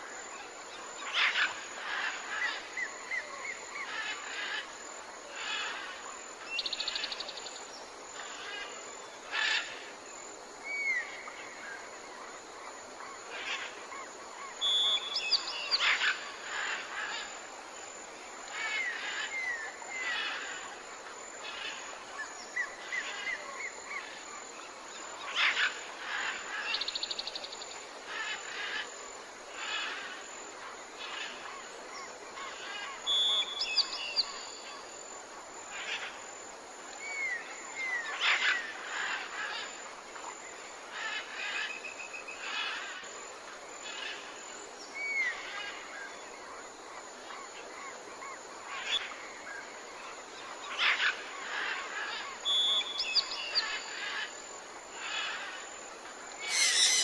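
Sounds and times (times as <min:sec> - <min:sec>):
background hiss: 0:00.0 - 0:57.0
birds chirping and whistling: 0:56.4 - 0:57.0
bird rattling trill: 0:56.5 - 0:57.0.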